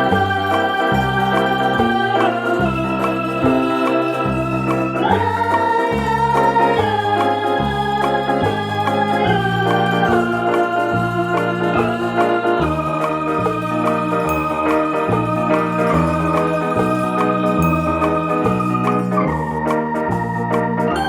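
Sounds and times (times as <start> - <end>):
electronic keyboard music: 0.0 - 21.0.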